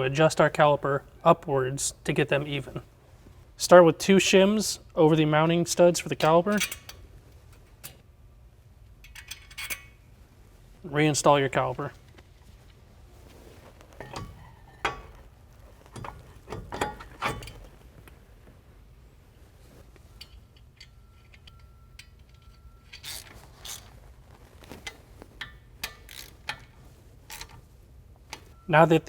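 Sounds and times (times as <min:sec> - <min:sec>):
metallic clicks of brake caliper: 0:15.9 - 0:17.7, 0:24.8 - 0:27.6.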